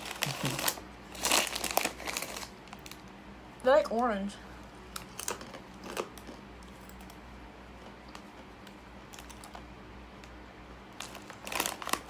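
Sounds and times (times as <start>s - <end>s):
crunchy chips being chewed: 0.0s - 3.1s, 5.0s - 7.2s, 9.1s - 9.7s, 11.0s - 12.0s.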